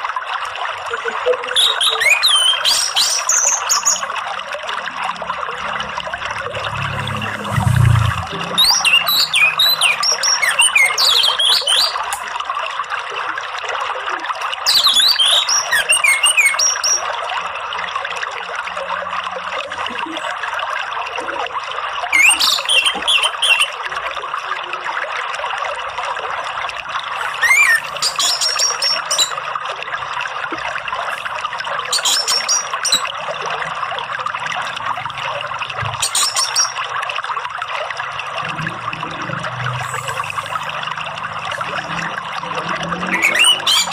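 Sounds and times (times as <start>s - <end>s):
water trickling: 0.0s - 43.9s
bird chirps and whistles: 1.5s - 4.1s, 8.6s - 12.2s, 14.6s - 17.0s, 22.1s - 23.8s, 27.2s - 29.4s, 31.9s - 33.1s, 36.0s - 36.8s, 43.1s - 43.9s.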